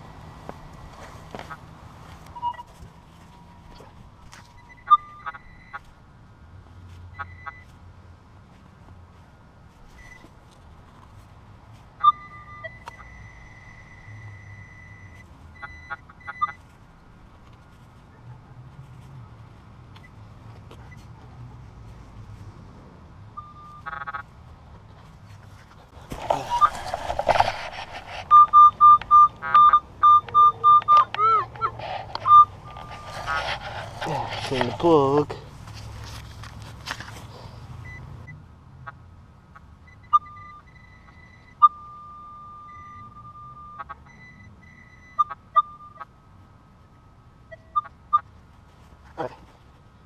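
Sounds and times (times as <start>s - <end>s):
scraping and rustling in dirt: 0.3s - 4.8s, 23.7s - 28.8s, 31.6s - 37.6s
metal detector beeps: 2.4s - 2.8s, 4.4s - 5.9s, 7.1s - 7.7s, 10.0s - 10.3s, 12.0s - 16.6s, 23.4s - 24.2s, 26.3s - 35.0s, 39.8s - 46.1s, 47.5s - 48.3s.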